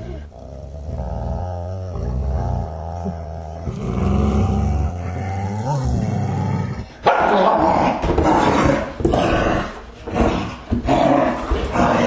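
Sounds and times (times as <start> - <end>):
dogs growling and snarling: 0.0 - 12.0
dogs barking: 7.0 - 7.6.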